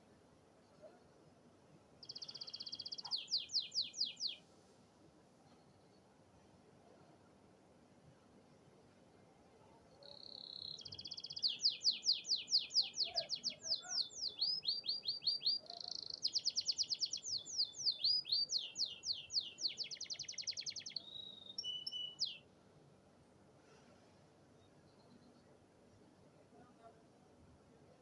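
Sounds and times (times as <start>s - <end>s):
canary singing trills: 2.0s - 4.4s, 10.0s - 22.4s.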